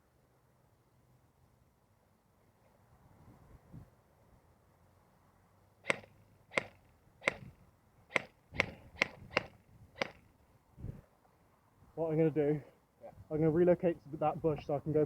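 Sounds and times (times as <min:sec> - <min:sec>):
airsoft gun shots: 0:05.8 - 0:10.3.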